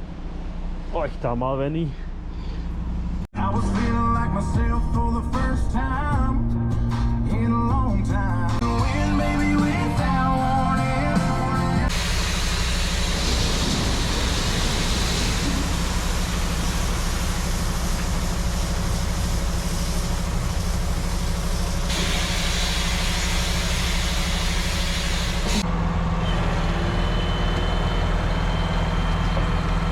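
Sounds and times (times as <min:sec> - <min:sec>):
diesel engine running: 0:00.0 - 0:29.9
background music: 0:03.4 - 0:11.9
broad hiss: 0:11.9 - 0:25.6.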